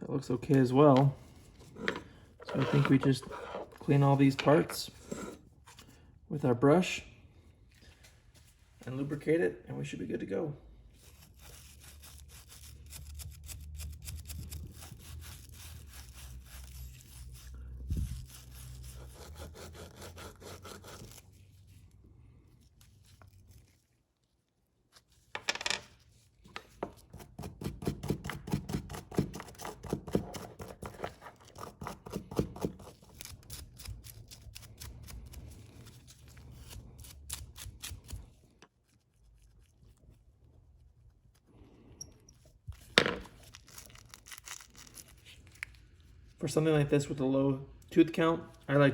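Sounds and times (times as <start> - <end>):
brush scrubbing metal parts: 11.0 - 19.4.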